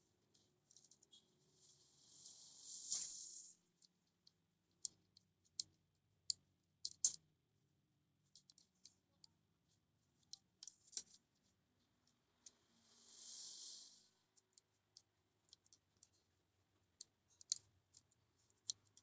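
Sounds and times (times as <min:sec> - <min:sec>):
clicks and taps of small parts: 0:03.8 - 0:07.2, 0:08.3 - 0:09.4, 0:10.2 - 0:12.6, 0:14.4 - 0:16.3, 0:17.0 - 0:19.0.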